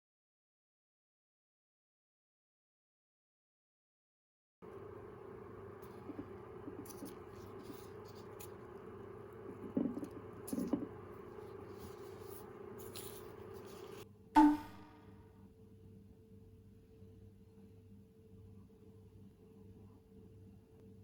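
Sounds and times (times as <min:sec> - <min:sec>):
steady hum: 0:04.6 - 0:15.0.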